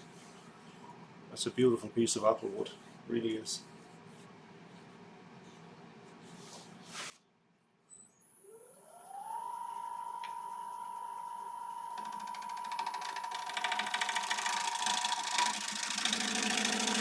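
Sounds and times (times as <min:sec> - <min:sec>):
wood lathe motor whine: 0:08.6 - 0:17.0
gouge chattering on spinning wood: 0:12.0 - 0:17.0.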